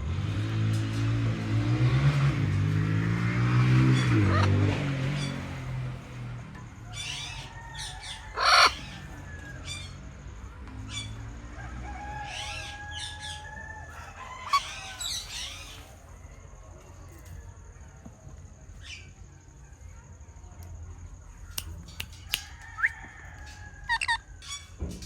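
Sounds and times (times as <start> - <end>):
parrot harsh squawk: 23.9 - 24.2
parrots chirping and whistling: 23.9 - 24.2.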